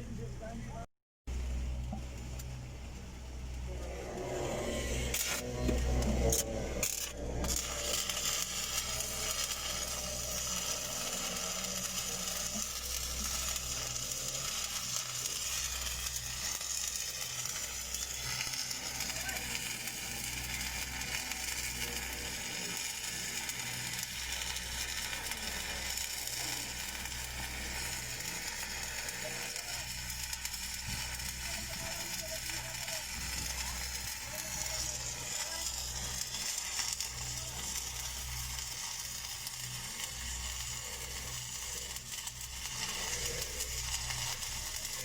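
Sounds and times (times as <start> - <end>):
welding arc crackling: 1.3 - 45.0.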